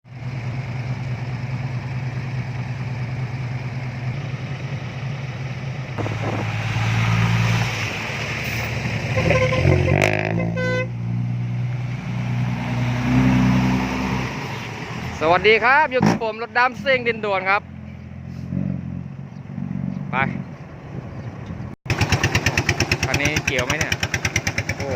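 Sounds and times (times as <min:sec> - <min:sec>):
vehicle engine running: 0:00.1 - 0:07.2, 0:20.5 - 0:24.9
horn toot: 0:08.4 - 0:11.0.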